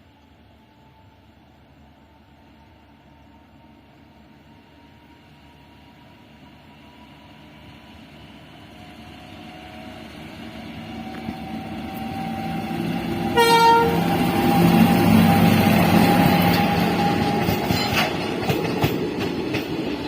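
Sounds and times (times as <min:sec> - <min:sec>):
train approaching: 0:00.0 - 0:20.0
locomotive horn blast: 0:13.3 - 0:14.1.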